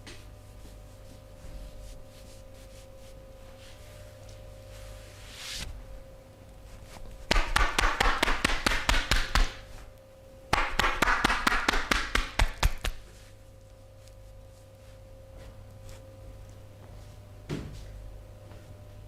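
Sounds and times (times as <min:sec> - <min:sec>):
hands slapping body: 0:07.3 - 0:09.6, 0:10.5 - 0:13.0.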